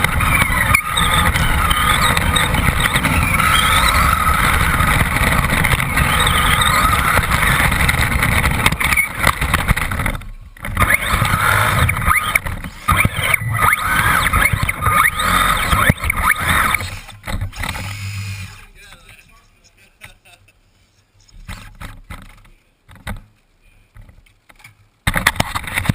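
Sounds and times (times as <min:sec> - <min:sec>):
toy car motor whine: 0:00.0 - 0:18.7.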